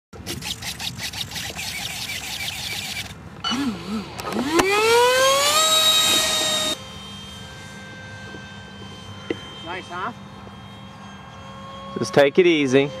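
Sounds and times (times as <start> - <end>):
electric motor whine rising: 0.2 - 13.0.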